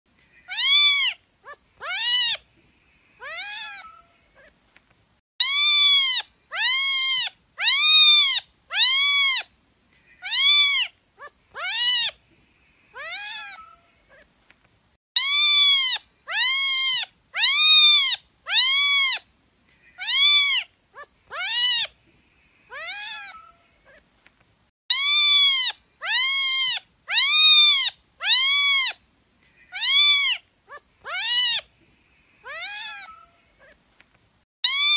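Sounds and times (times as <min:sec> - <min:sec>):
cat meowing: 0:00.4 - 0:02.4, 0:03.2 - 0:04.5, 0:05.4 - 0:09.4, 0:10.2 - 0:12.2, 0:13.0 - 0:14.3, 0:15.2 - 0:19.2, 0:19.9 - 0:22.0, 0:22.7 - 0:24.0, 0:24.9 - 0:29.0, 0:29.7 - 0:31.7, 0:32.4 - 0:33.8, 0:34.6 - 0:34.9.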